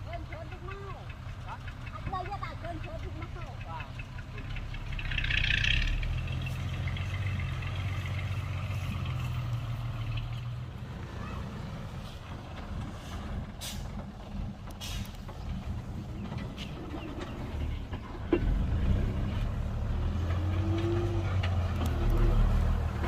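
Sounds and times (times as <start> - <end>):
diesel machinery droning: 0.0 - 23.0
short hisses: 13.6 - 13.9.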